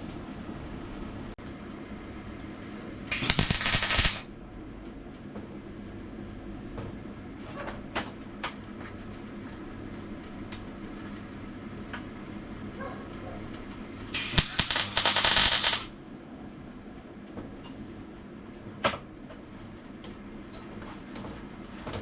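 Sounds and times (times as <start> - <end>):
steady hum: 0.0 - 7.4, 13.5 - 18.5
sharp clicks: 3.1 - 4.2, 14.2 - 15.9
welder crackling burst: 3.1 - 4.3, 14.1 - 15.9.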